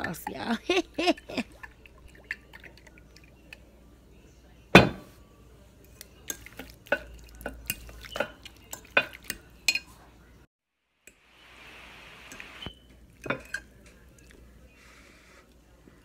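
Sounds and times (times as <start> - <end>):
utensil clinking against dish: 5.9 - 10.0, 13.2 - 14.0.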